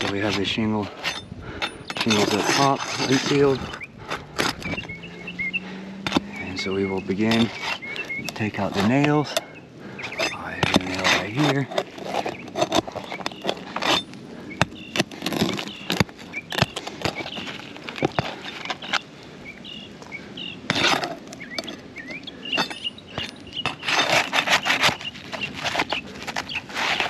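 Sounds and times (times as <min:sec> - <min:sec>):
metal bar scraping shingles: 0:00.0 - 0:05.0, 0:06.0 - 0:19.8, 0:20.6 - 0:27.0
faint bird chirps: 0:03.2 - 0:08.6, 0:21.3 - 0:23.9.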